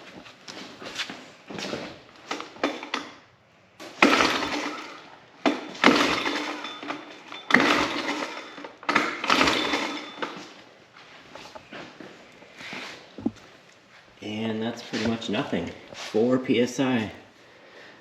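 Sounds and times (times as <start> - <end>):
engine cranking: 3.8 - 10.7.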